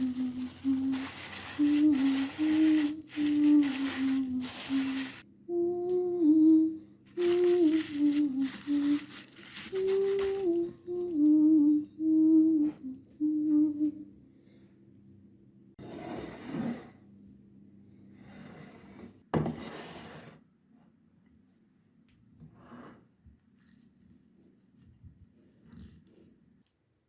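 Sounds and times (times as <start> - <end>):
hummed wordless vocal melody: 0.0 - 14.2.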